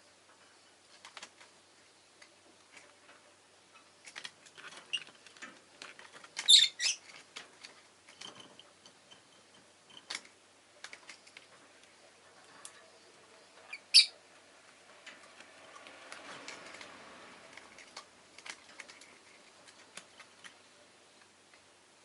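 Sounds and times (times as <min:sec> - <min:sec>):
lovebirds chirping and clicking: 0:06.3 - 0:07.4, 0:13.5 - 0:14.2.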